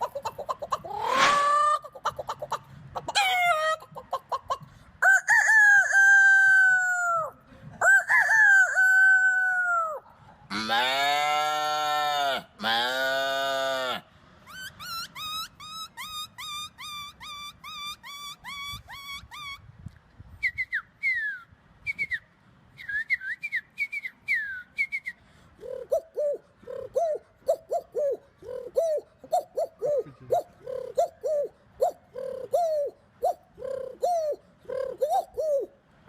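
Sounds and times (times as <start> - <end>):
man cooing like a pigeon: 0.0 - 12.4, 25.6 - 35.8
man whistling bird calls: 14.5 - 19.6, 20.4 - 25.2.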